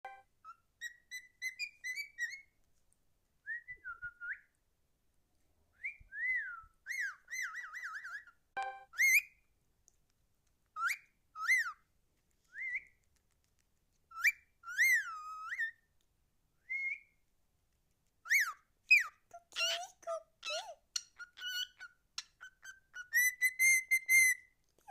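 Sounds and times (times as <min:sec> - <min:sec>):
cockatiel whistling: 0:00.5 - 0:02.5, 0:05.8 - 0:09.3, 0:10.8 - 0:11.8, 0:14.1 - 0:15.8, 0:18.3 - 0:19.2, 0:20.5 - 0:24.5.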